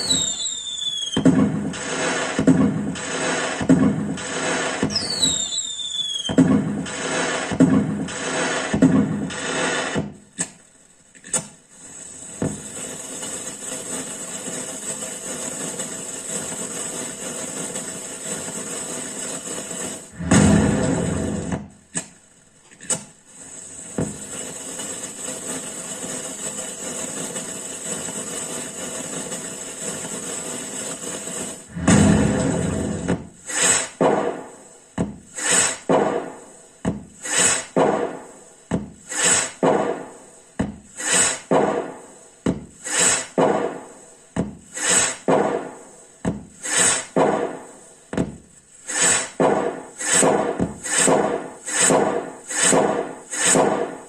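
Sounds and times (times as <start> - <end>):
firecracker sound effect: 0.0 - 22.1, 23.0 - 54.0
whooshes: 20.1 - 21.6, 31.5 - 34.6.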